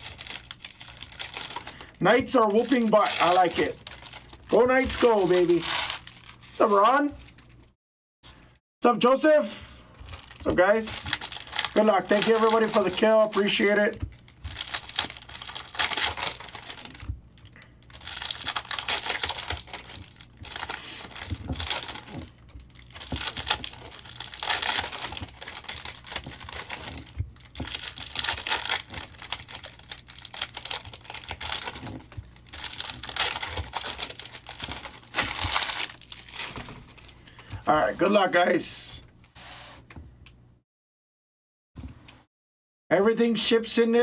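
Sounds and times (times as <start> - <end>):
wrappers crinkling and tearing: 0.0 - 7.6, 9.9 - 37.2.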